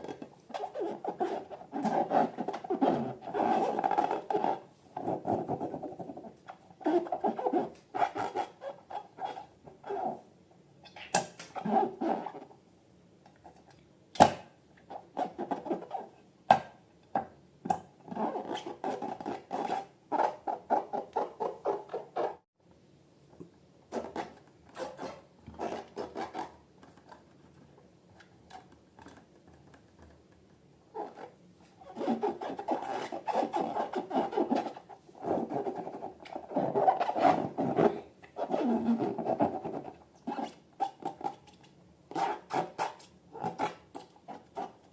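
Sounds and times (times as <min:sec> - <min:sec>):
squeaky rubbing of balloons: 0:00.0 - 0:10.2, 0:10.8 - 0:12.5, 0:14.9 - 0:16.2, 0:18.1 - 0:22.4, 0:23.9 - 0:26.6, 0:30.9 - 0:44.9.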